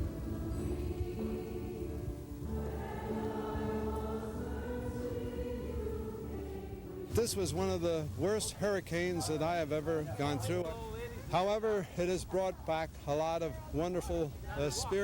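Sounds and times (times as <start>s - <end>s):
choir singing a hymn: 0.0s - 10.6s.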